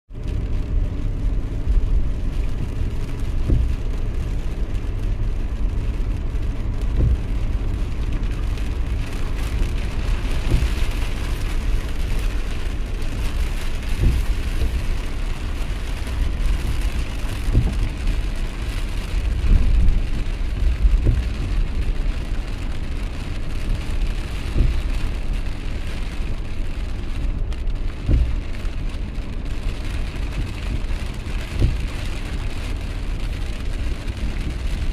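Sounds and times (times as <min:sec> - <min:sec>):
heavy low rumble: 0:00.1 - 0:34.9
steady rain: 0:00.1 - 0:34.9
short thumps: 0:03.3 - 0:03.9, 0:06.8 - 0:07.5, 0:10.3 - 0:11.5, 0:13.5 - 0:15.0, 0:16.0 - 0:18.0, 0:24.5 - 0:24.9, 0:28.0 - 0:28.5.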